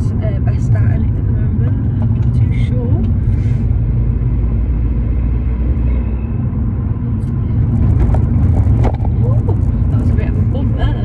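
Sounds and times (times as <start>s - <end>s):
car interior road rumble: 0.0s - 11.0s
car rattling over bump: 7.0s - 11.0s.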